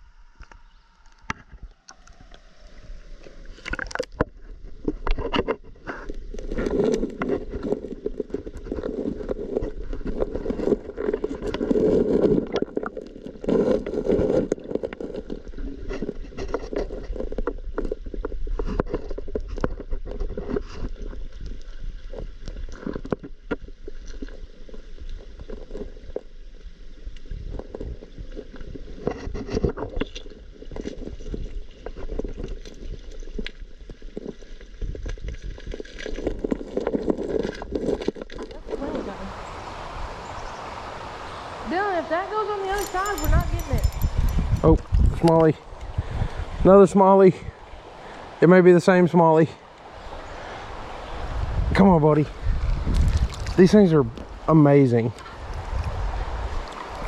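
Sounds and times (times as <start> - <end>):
water sloshing: 0.4 - 18.1, 28.4 - 40.3, 40.9 - 51.3, 52.3 - 57.0
muffled scrapes and knocks: 3.6 - 24.3, 27.5 - 38.9.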